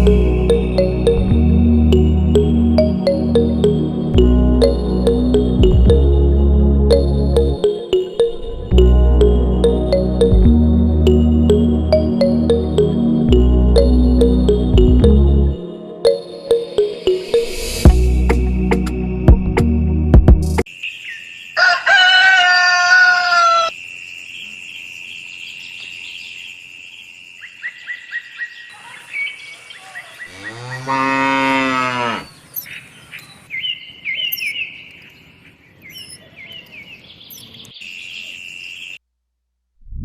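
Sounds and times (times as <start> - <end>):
music: 0.0 - 20.7
high-pitched animal call: 21.6 - 23.7
birds chirping: 27.5 - 39.0
cow mooing: 30.2 - 32.3.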